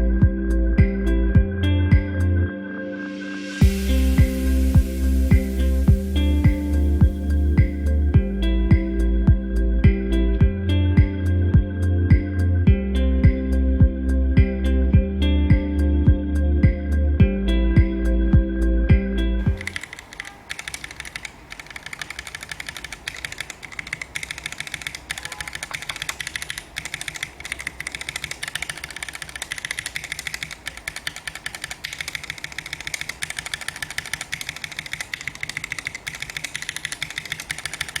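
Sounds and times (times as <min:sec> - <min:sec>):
mechanical keyboard typing: 0:19.5 - 0:38.0.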